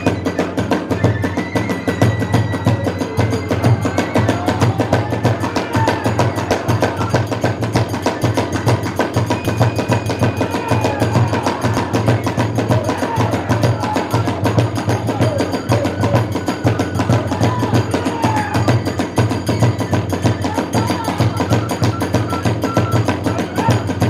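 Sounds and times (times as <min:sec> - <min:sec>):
drums beating fast rhythm: 0:00.0 - 0:24.0
hand cymbals: 0:00.0 - 0:24.0.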